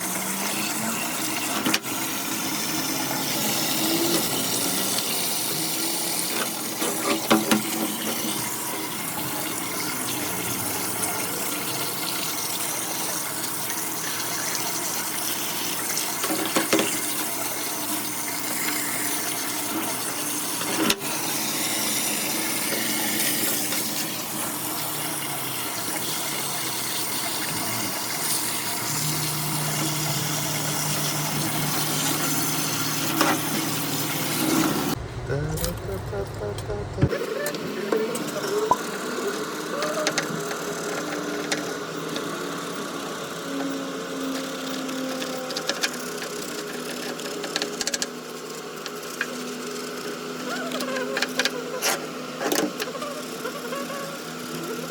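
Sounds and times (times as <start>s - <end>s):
running water rushing: 0.0s - 35.0s
low steady hum: 34.9s - 37.1s.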